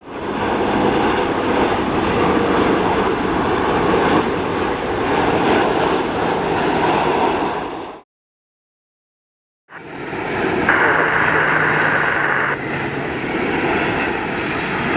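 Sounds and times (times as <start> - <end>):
jet engines roaring: 0.0 - 7.9, 9.8 - 14.9.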